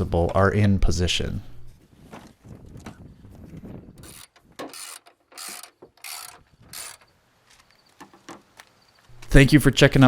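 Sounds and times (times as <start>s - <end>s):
ratchet wrench clicking: 4.0s - 7.0s.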